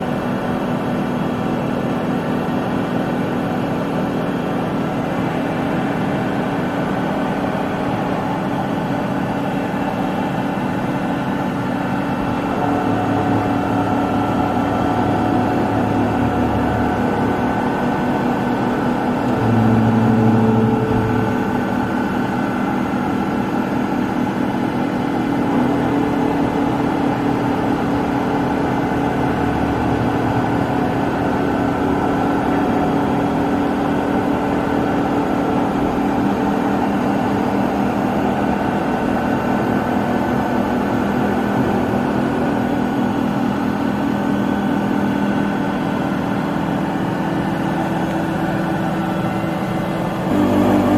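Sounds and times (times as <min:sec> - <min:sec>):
milling machine humming: 0:00.0 - 0:50.9
low hum: 0:11.8 - 0:33.8.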